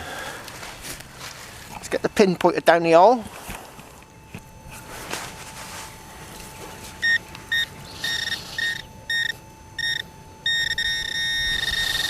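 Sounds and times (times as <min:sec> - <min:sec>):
metal detector probe beeping: 0:04.0 - 0:12.0.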